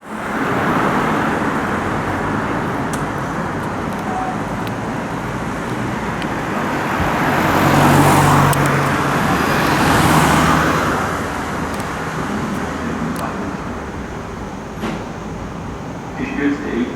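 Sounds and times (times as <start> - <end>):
fire engine driving: 0.0 - 16.9
road noise: 0.0 - 16.9.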